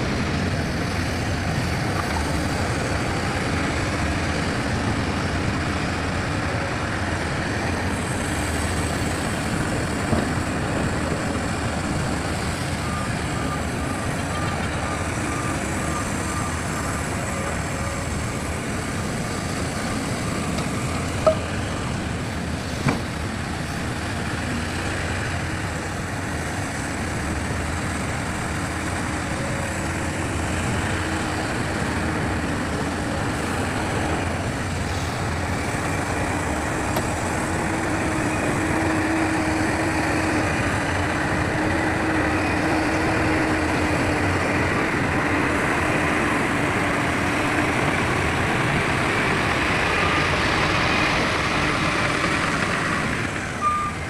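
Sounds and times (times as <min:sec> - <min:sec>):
heavy diesel machinery running: 0:00.0 - 0:54.0
reversing beep: 0:12.1 - 0:18.1, 0:20.5 - 0:21.5, 0:53.6 - 0:54.0.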